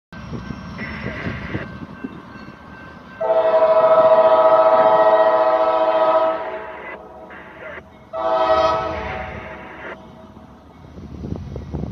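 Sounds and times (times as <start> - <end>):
locomotive horn blast: 3.2 - 10.2.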